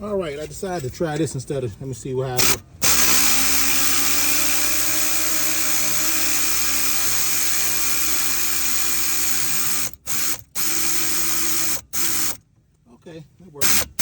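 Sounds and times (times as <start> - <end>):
pneumatic air ratchet running: 2.4 - 12.4, 13.6 - 14.0.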